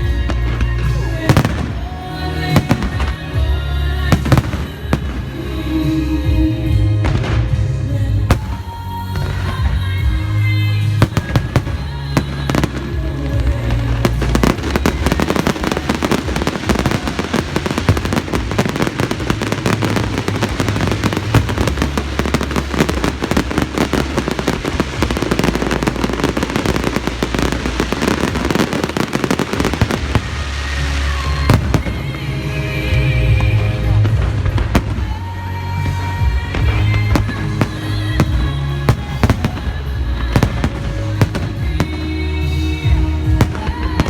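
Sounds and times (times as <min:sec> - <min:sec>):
fireworks crackling and popping: 0:00.0 - 0:44.0
music playing: 0:00.0 - 0:44.0.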